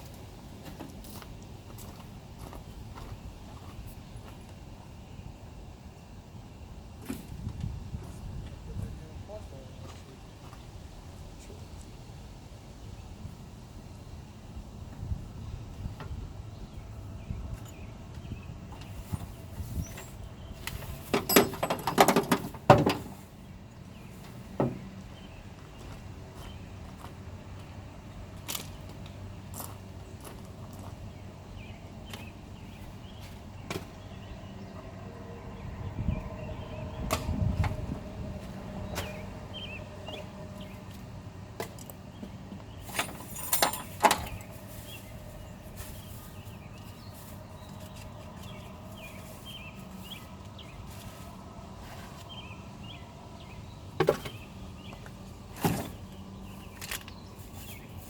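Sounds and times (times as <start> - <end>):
junk knocking and clattering: 21.0 - 23.2.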